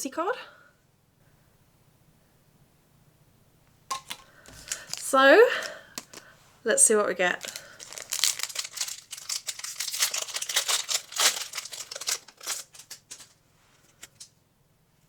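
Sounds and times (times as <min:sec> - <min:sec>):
foil wrapper crinkling and tearing: 0:03.9 - 0:06.3, 0:07.3 - 0:14.3.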